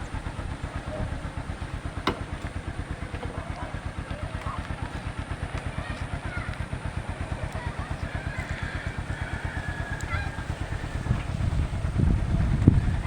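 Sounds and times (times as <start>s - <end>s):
small motor throbbing: 0.0s - 13.0s
faint wavering high squeals: 7.5s - 11.8s.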